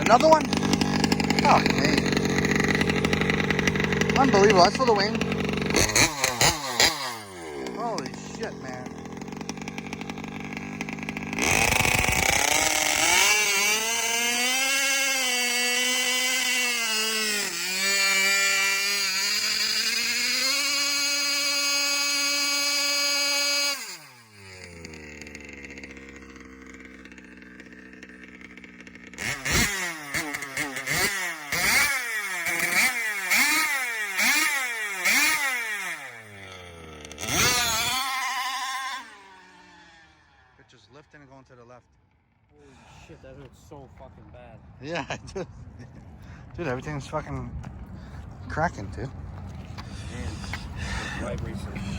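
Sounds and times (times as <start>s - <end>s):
small engine revving: 0.0s - 42.9s, 48.7s - 51.9s.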